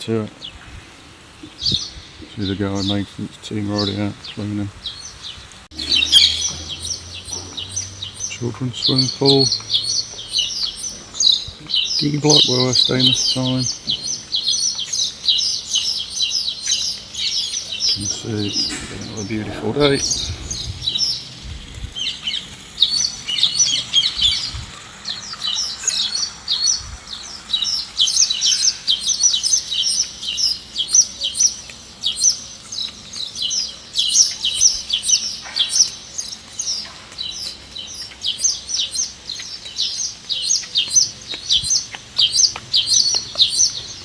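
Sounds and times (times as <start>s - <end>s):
small birds chirping: 0.0s - 44.0s.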